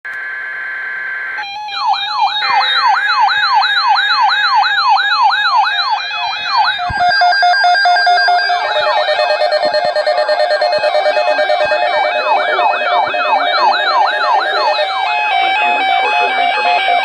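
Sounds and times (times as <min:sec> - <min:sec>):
electronic siren yelping: 0:00.1 - 0:17.0
steady electronic tones: 0:05.9 - 0:17.0.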